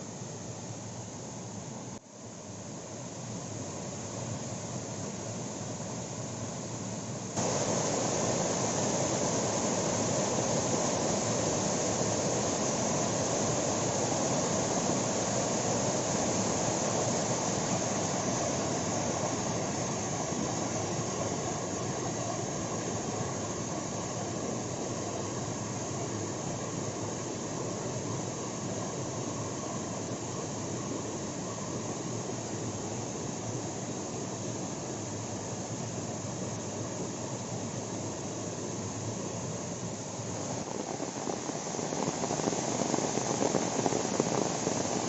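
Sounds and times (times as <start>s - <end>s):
waterfall roaring: 7.4s - 24.7s, 40.2s - 45.0s.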